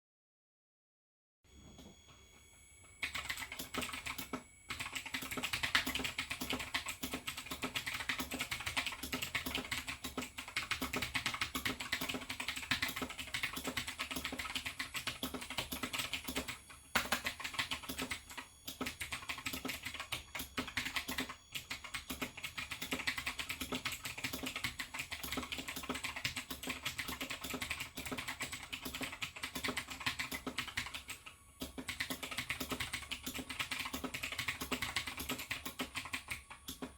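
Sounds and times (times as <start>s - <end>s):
typing on clicky mechanical keyboard: 3.0s - 36.9s.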